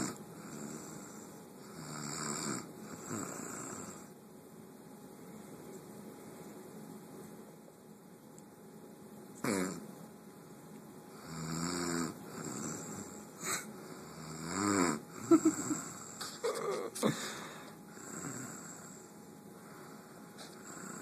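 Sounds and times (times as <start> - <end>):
woman snoring: 0.0 - 4.2, 9.4 - 9.8, 11.2 - 19.1, 19.8 - 21.0
woman snorting: 9.4 - 9.8, 12.4 - 13.7, 14.5 - 18.9.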